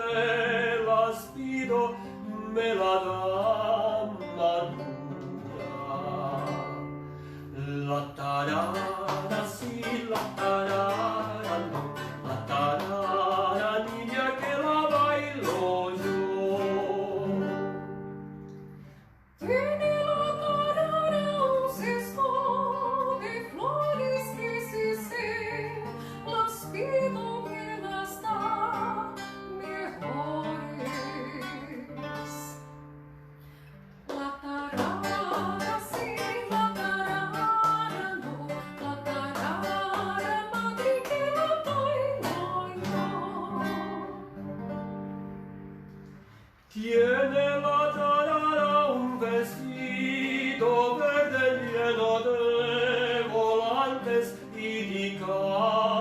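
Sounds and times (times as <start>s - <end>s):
person singing: 0.0s - 17.7s, 19.4s - 32.6s, 34.1s - 44.5s, 46.7s - 56.0s
guitar playing: 0.0s - 56.0s.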